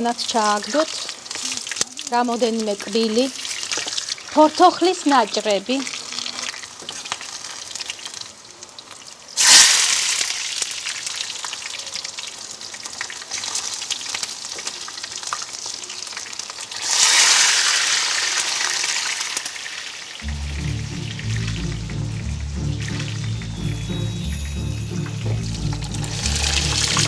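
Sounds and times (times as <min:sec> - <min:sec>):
hot oil sizzling in a pan: 0:00.0 - 0:20.2.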